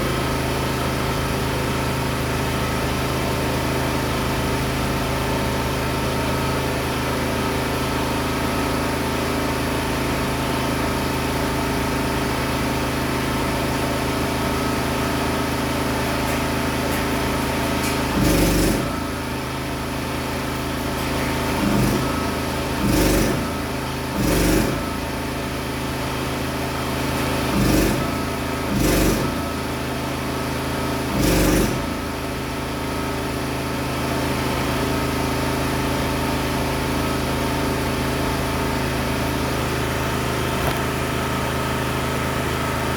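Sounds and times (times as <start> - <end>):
machine hum: 14.2 - 30.0, 30.6 - 32.6.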